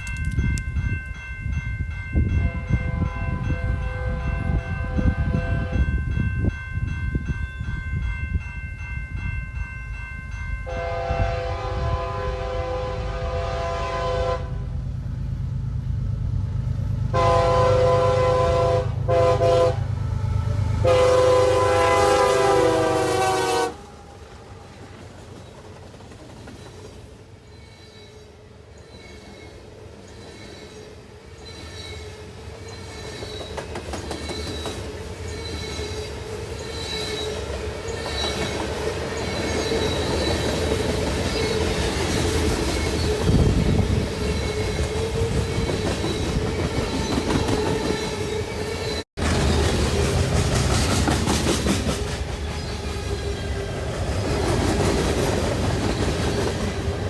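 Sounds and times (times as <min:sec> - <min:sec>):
train horn: 0:02.3 - 0:06.0, 0:10.6 - 0:14.7, 0:17.1 - 0:24.8
train wheels clicking over rail joints: 0:32.6 - 0:57.0.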